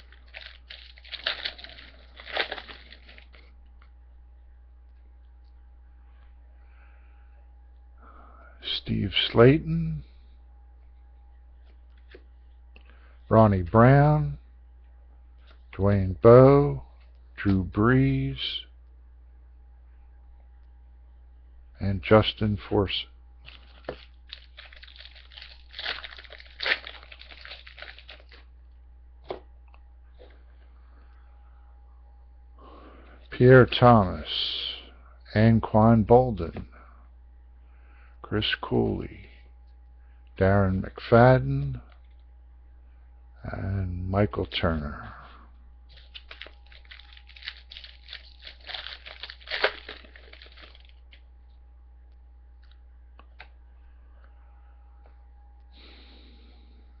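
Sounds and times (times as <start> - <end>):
foil wrapper tearing and crinkling: 0.0 - 3.5, 23.4 - 28.4, 45.9 - 51.2.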